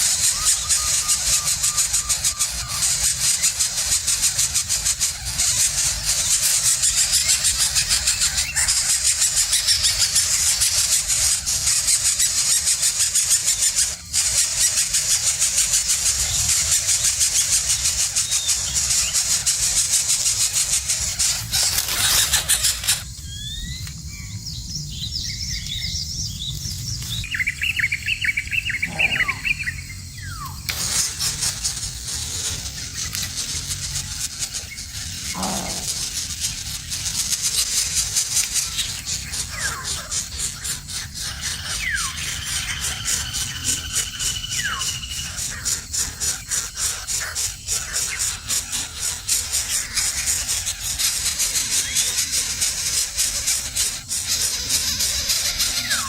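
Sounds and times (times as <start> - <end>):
high chirping bird calls: 0.0 - 56.0
loud high pulsing buzz: 28.1 - 56.0.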